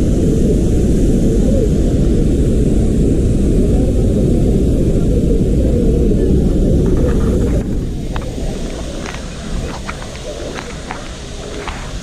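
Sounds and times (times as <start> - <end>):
waterfall roaring: 6.2 - 12.0.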